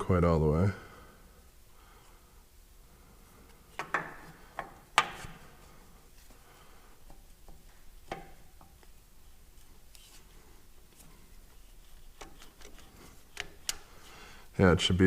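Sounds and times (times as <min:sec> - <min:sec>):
sharp clicks and knocks on metal: 0:07.0 - 0:08.9.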